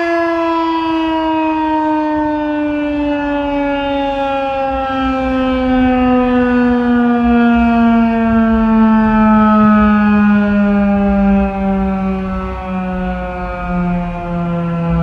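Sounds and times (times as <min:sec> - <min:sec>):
warning siren long tone: 0:00.0 - 0:15.0.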